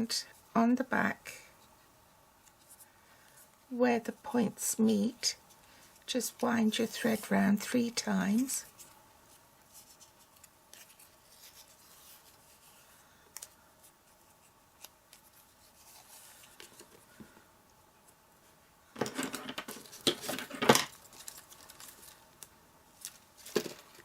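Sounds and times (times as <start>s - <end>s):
paper rustling: 8.4s - 17.0s, 19.7s - 22.2s.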